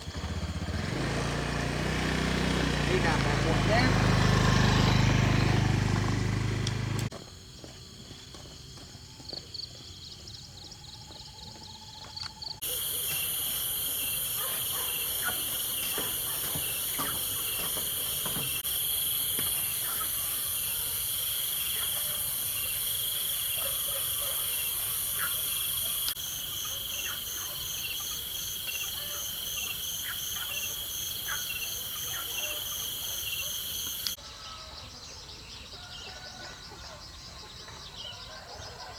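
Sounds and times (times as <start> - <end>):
insects trilling and buzzing: 7.5 - 38.1.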